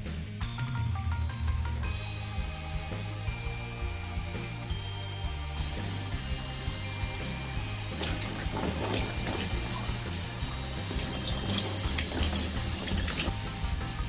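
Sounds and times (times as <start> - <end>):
background music: 0.0 - 14.0
tap water splashing: 7.9 - 13.3.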